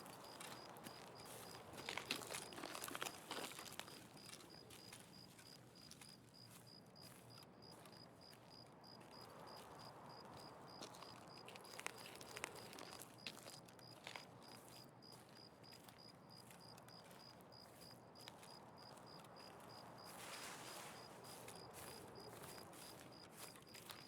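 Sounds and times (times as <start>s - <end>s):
rustling and crinkling: 0.0s - 5.1s, 20.0s - 24.0s.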